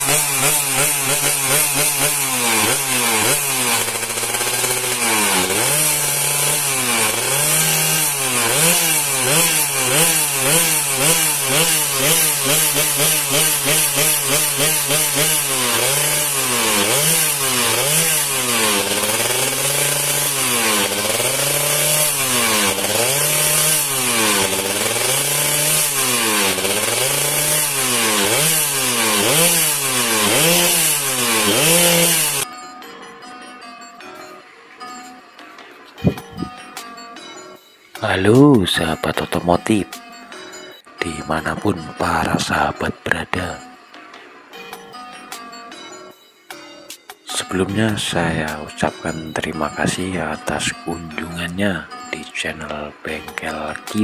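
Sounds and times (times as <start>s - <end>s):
two-stroke engine revving: 0.0s - 32.5s, 36.0s - 36.8s, 41.0s - 43.7s, 47.3s - 54.0s.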